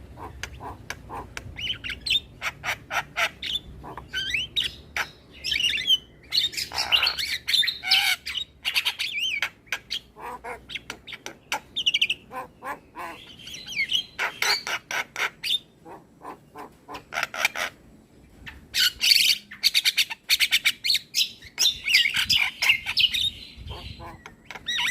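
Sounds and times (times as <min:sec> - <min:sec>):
bird singing whistles and squawks: 0:03.2 - 0:10.1, 0:18.5 - 0:24.9.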